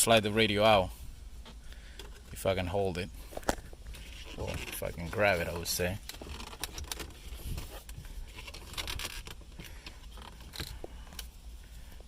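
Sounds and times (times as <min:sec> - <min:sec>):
plastic and metal clicks and scraping: 0:03.4 - 0:11.3.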